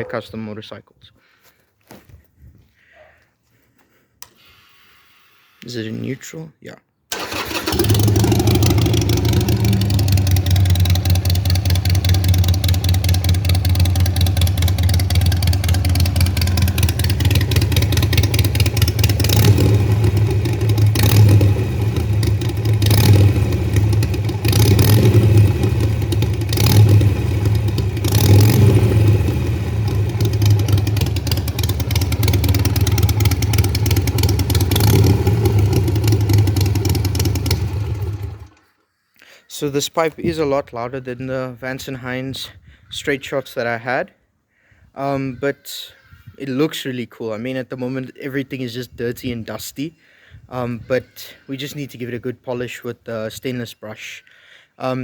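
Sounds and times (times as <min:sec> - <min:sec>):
motorcycle engine idling: 0:07.2 - 0:38.6.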